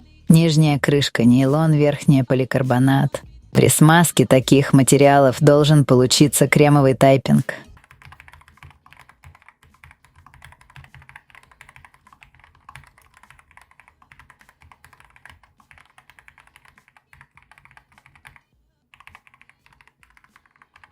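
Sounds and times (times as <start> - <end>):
mechanical keyboard typing: 6.6 - 20.9.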